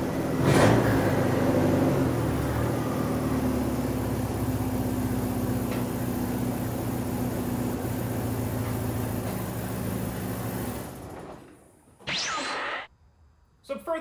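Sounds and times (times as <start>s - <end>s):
pickup truck engine running: 0.0s - 11.2s.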